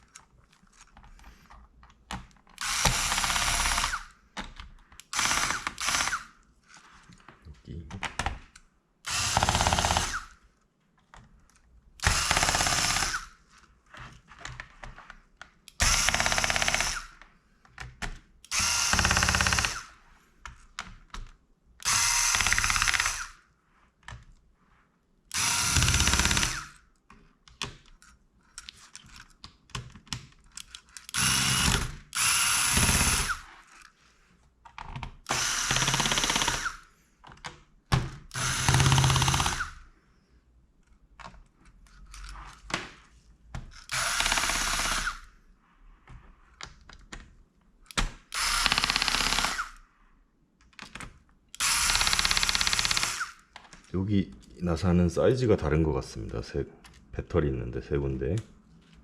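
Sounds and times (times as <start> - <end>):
electric screwdriver whirring: 2.6 - 4.1, 5.0 - 6.4, 9.1 - 10.4, 12.0 - 13.4, 15.8 - 17.2, 18.5 - 20.0, 21.8 - 23.4, 25.3 - 26.8, 31.0 - 33.8, 35.2 - 36.9, 38.3 - 39.8, 43.8 - 45.3, 48.3 - 49.8, 51.6 - 53.4.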